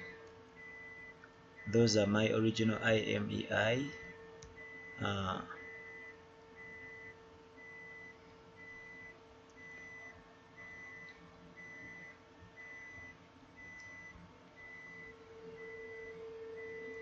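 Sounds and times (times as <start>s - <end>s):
steady low hum: 0.0s - 17.0s
faint electronic beep: 3.9s - 17.0s.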